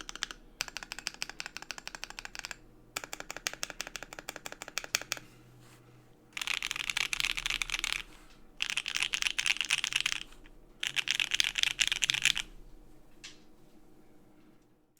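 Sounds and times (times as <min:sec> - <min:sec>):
mechanical keyboard typing: 0:00.0 - 0:05.3, 0:06.4 - 0:12.5.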